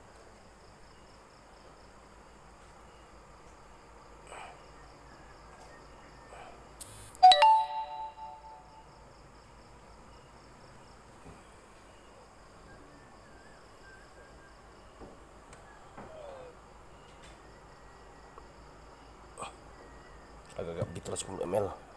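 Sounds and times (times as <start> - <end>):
bright ringing ding: 7.2 - 8.8.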